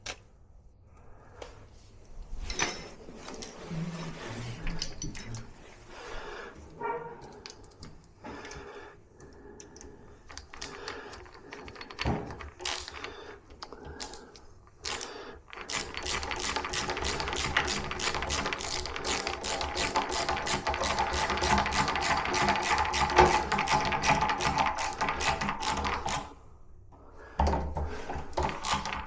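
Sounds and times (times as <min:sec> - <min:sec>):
metal lock parts clicking: 0:06.7 - 0:08.6, 0:09.2 - 0:26.3
rapid mechanical rattle: 0:10.2 - 0:26.4.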